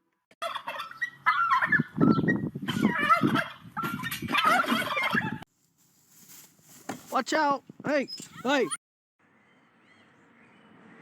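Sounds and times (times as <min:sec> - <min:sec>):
turkey gobbling: 0:00.4 - 0:05.4.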